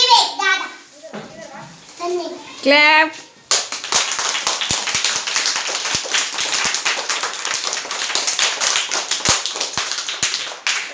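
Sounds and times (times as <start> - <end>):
children clapping: 3.5 - 10.9.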